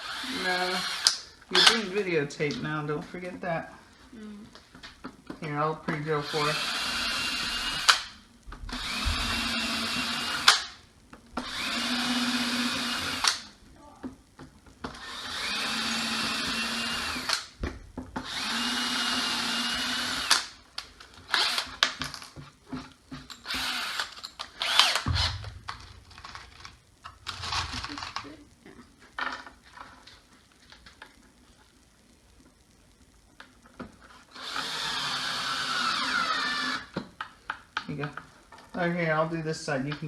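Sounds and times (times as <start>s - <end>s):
power drill drilling wood: 0.0s - 1.9s, 6.2s - 8.0s, 8.7s - 10.6s, 11.4s - 13.4s, 14.9s - 17.5s, 18.2s - 20.5s, 21.3s - 21.8s, 23.4s - 25.4s, 34.3s - 37.0s.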